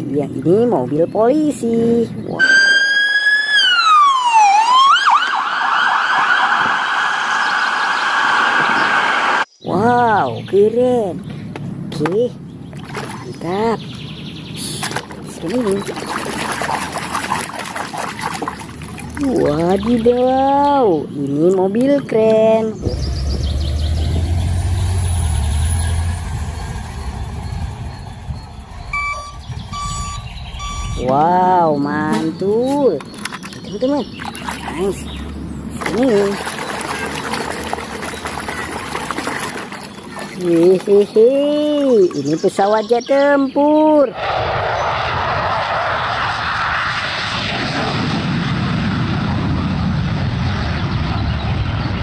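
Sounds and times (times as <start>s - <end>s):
fighter jet engine roar: 5.9s - 9.5s, 22.8s - 31.0s, 44.1s - 52.0s
low hum: 22.8s - 40.3s
short electronic beeps: 26.5s - 31.1s.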